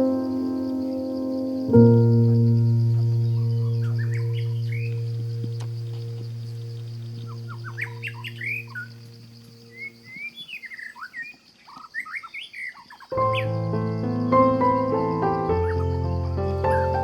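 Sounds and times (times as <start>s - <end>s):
low musical drone: 0.0s - 10.0s
birds chirping: 0.0s - 17.0s.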